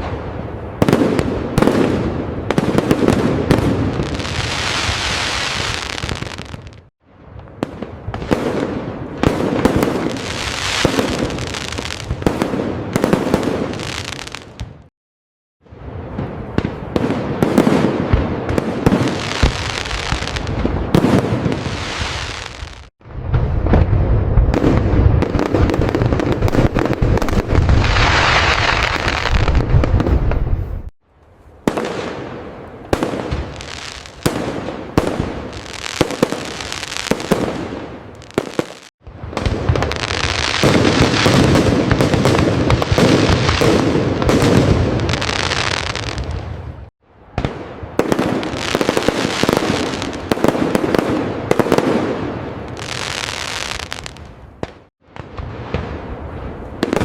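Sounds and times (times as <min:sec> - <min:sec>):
fireworks bursts and crackling: 0:00.0 - 0:14.9, 0:15.7 - 0:30.9, 0:31.6 - 0:57.0
low booms: 0:22.7 - 0:30.9.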